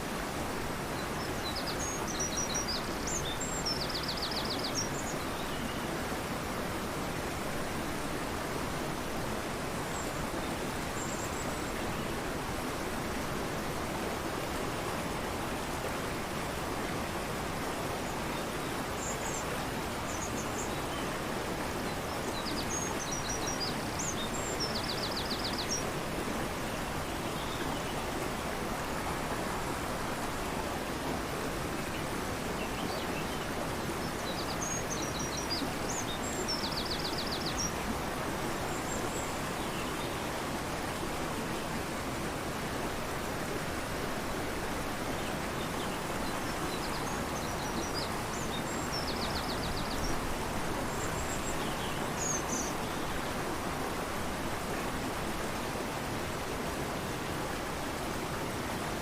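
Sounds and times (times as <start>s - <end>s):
river rushing: 0.0s - 59.0s.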